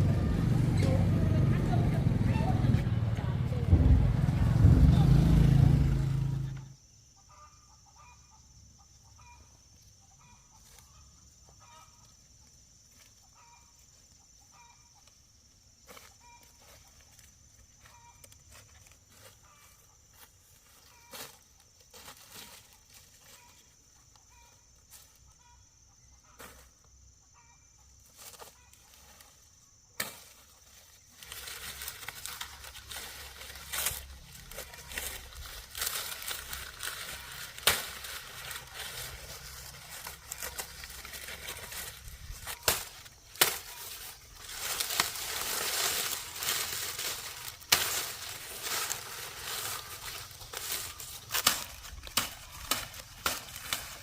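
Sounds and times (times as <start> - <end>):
rustling crunching noise: 30.2 - 54.0.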